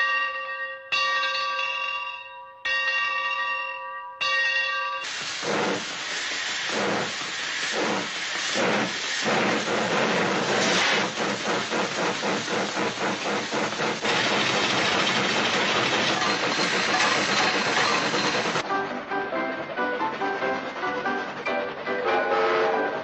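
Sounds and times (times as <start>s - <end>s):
steam locomotive chugging: 5.0s - 23.0s.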